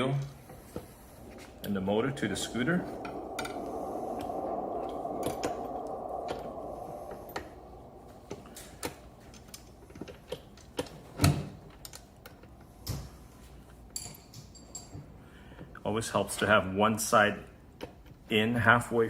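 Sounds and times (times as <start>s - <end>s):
hiss: 0.4s - 11.5s.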